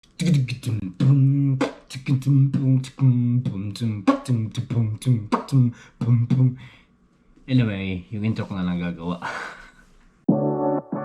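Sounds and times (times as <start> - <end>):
man beatboxing: 0.0 - 6.6.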